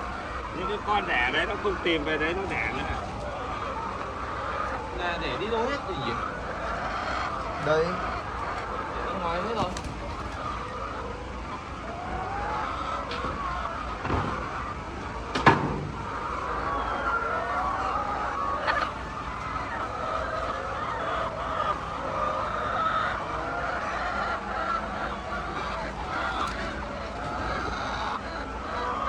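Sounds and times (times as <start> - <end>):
hens clucking: 0.0 - 29.0.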